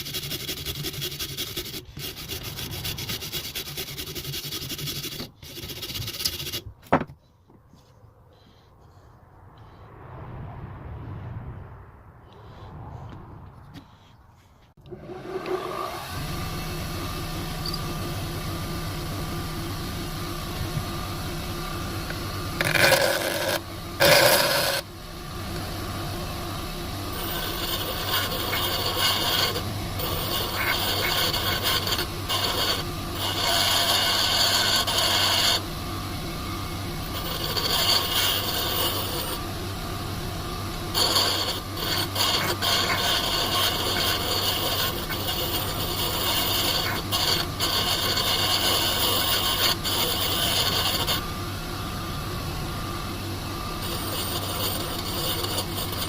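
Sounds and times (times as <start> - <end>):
power tool motor running: 14.8 - 24.9, 26.5 - 35.7, 36.9 - 39.4, 40.9 - 52.0, 53.6 - 56.0
metal scraping and grinding: 22.0 - 24.8, 27.1 - 35.6, 37.0 - 39.4, 40.9 - 51.2, 53.8 - 56.0.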